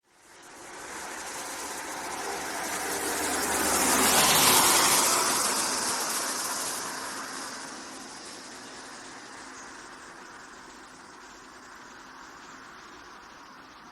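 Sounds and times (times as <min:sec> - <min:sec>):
motor vehicle passing by: 0:00.2 - 0:13.5.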